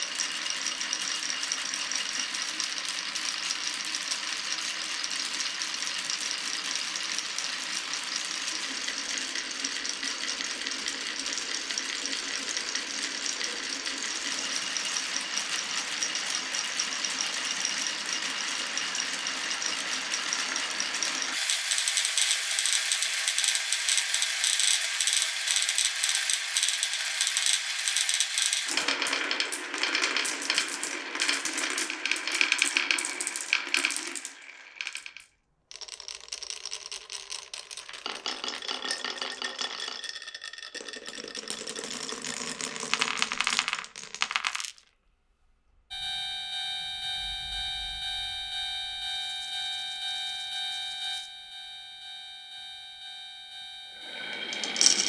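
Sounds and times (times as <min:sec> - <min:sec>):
marbles rattling along a track: 0:00.0 - 0:44.9, 0:54.1 - 0:55.0.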